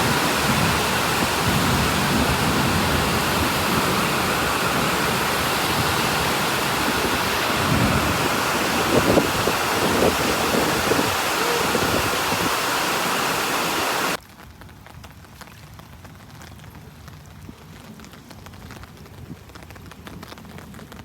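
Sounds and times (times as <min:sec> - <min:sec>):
loud rushing noise: 0:00.0 - 0:14.2.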